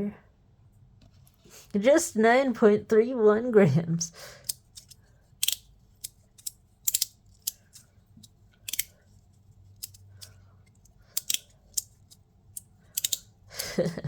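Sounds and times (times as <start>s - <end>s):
fidget slider clicking: 4.4s - 7.8s, 8.6s - 9.0s, 11.2s - 12.0s, 12.6s - 13.7s.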